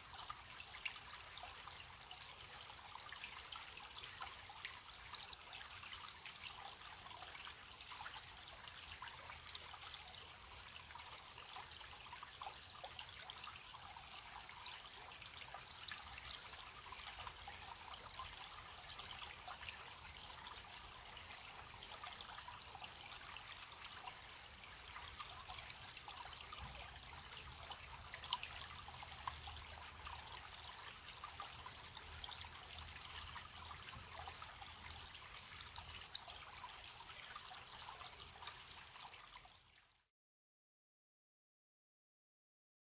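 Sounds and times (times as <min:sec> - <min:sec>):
faint crickets chirping: 0:00.0 - 0:39.6
gentle stream running: 0:00.0 - 0:40.1.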